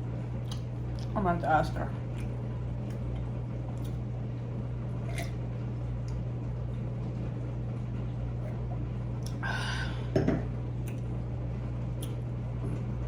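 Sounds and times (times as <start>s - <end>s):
steady low hum: 0.0s - 13.0s
person chewing quietly: 2.1s - 4.0s, 5.0s - 5.4s, 9.2s - 9.4s, 10.8s - 11.2s.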